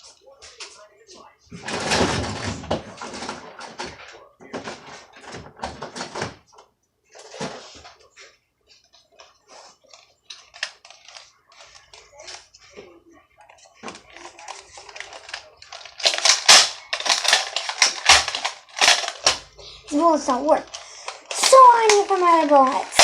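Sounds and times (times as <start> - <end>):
plastic toy blaster clicking and rattling: 10.3 - 12.4, 14.2 - 19.4, 20.5 - 23.0.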